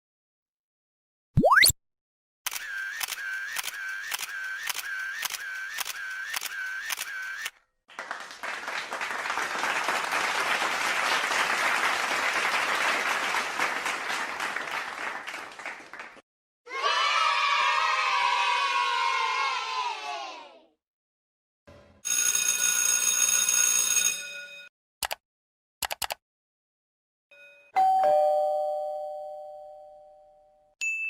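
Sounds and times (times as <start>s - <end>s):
camera shutter clicking: 2.5s - 7.5s
applause: 7.9s - 16.2s.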